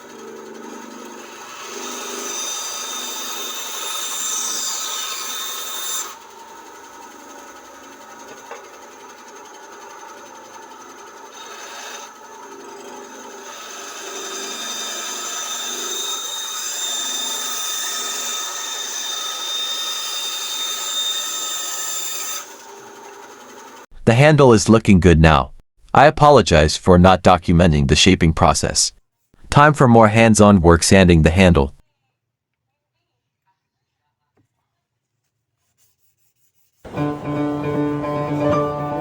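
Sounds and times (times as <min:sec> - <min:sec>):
power tool whining: 0:00.0 - 0:23.9.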